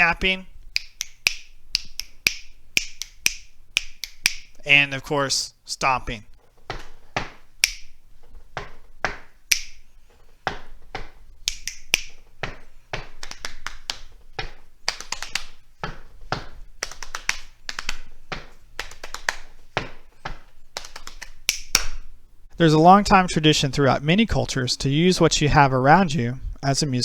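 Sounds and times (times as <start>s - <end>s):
finger snaps: 0.7s - 4.6s, 11.5s - 12.2s, 20.8s - 22.0s
hand claps: 0.8s - 4.5s, 7.2s - 7.9s, 9.1s - 9.8s, 10.5s - 22.0s
foot stomps: 6.3s - 22.6s.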